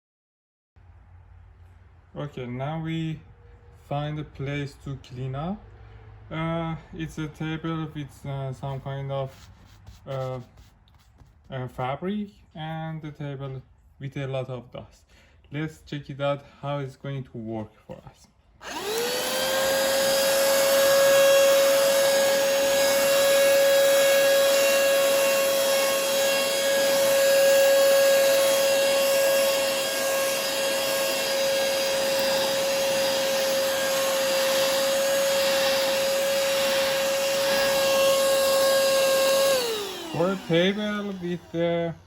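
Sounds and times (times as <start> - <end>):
handheld vacuum cleaner motor whine: 18.6 - 42.0
brush nozzle on table: 25.5 - 41.2.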